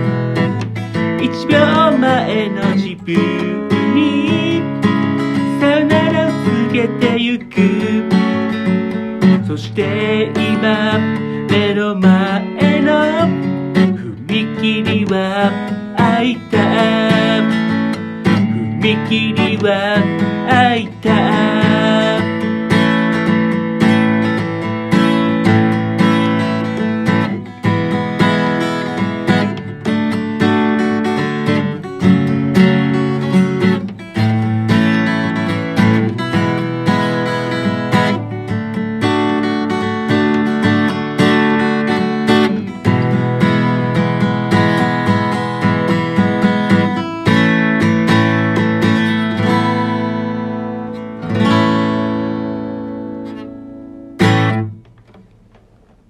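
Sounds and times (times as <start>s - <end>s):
acoustic guitar strumming chords: 0.0s - 56.0s.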